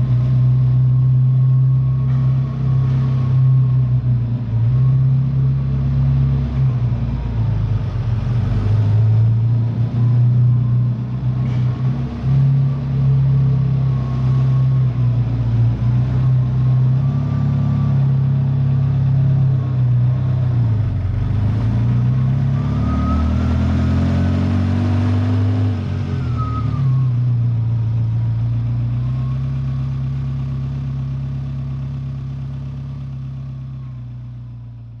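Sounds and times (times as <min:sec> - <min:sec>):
sports car engine revving: 0:00.0 - 0:29.0.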